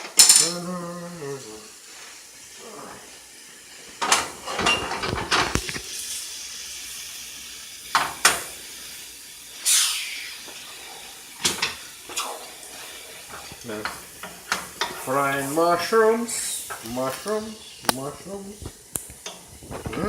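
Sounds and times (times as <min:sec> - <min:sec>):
pan and utensils clattering: 0:00.0 - 0:00.7, 0:03.8 - 0:06.0, 0:07.9 - 0:08.6, 0:10.5 - 0:20.0
mushrooms hissing in hot oil: 0:00.0 - 0:20.0.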